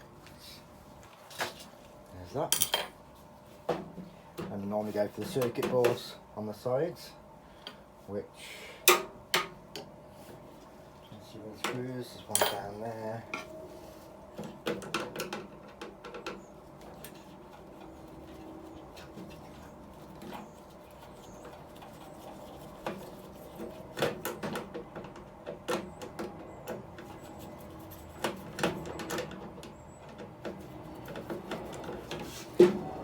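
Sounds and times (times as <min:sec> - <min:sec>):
tools clicking and knocking on metal: 0:11.6 - 0:12.7.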